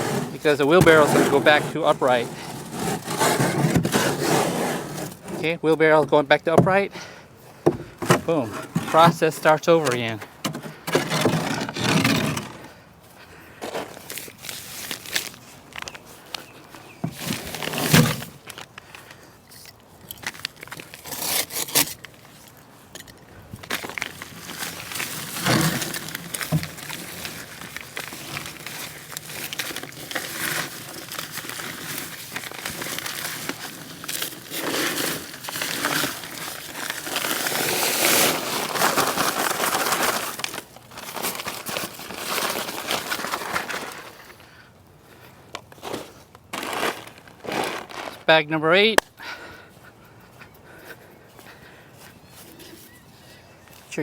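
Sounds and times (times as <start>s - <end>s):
paper bag crinkling and rustling: 0.0s - 5.6s, 7.6s - 12.8s, 13.6s - 19.0s, 19.8s - 22.6s, 23.6s - 44.5s, 45.6s - 48.4s
scraping and shuffling: 0.0s - 23.0s, 23.6s - 44.4s, 45.1s - 49.0s.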